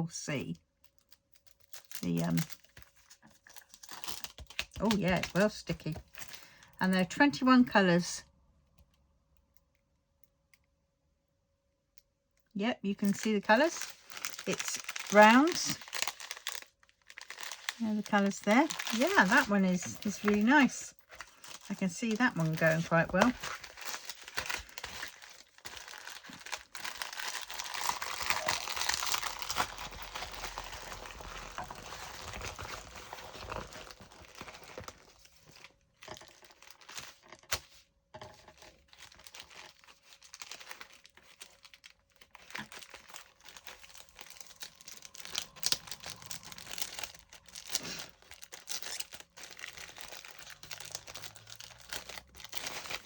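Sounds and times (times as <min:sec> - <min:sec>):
plastic packaging crinkling: 0:00.8 - 0:07.6, 0:12.9 - 0:53.0.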